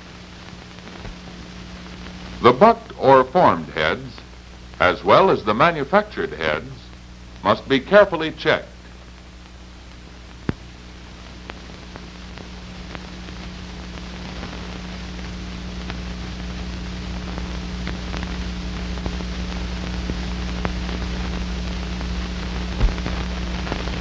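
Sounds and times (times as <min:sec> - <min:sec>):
faint clicks and crackles: 0:00.0 - 0:03.0, 0:08.8 - 0:24.0
film soundtrack hiss: 0:00.0 - 0:24.0
low hum: 0:00.0 - 0:24.0.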